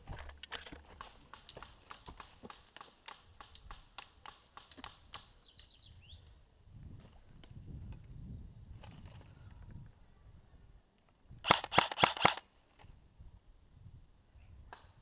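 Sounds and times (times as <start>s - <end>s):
footsteps on dry twigs and leaves: 0.0s - 5.0s.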